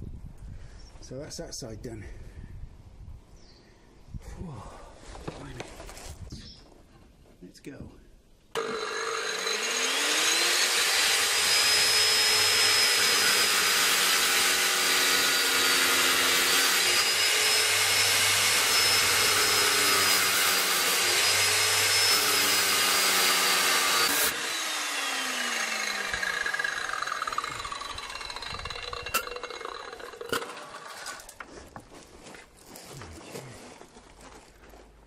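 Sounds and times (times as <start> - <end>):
angle grinder cutting steel: 8.6 - 31.4.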